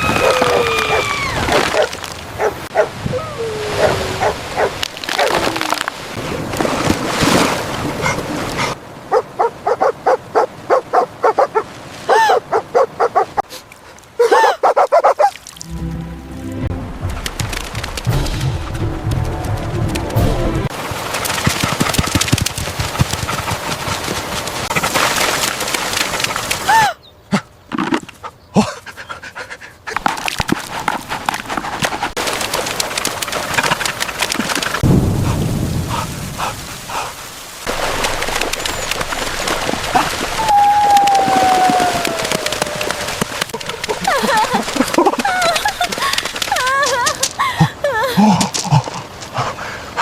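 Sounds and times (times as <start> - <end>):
dog panting: 35.9 - 37.2.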